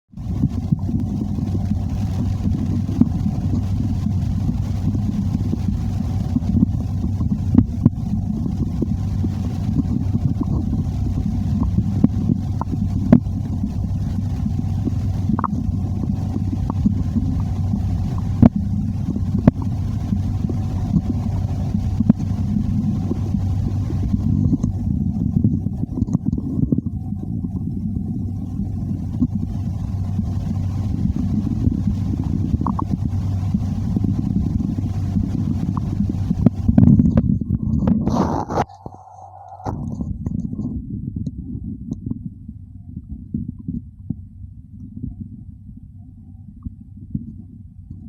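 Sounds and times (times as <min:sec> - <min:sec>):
stomach growling and gurgling: 0:00.1 - 0:48.0
sharp stomach pops: 0:37.8 - 0:40.3.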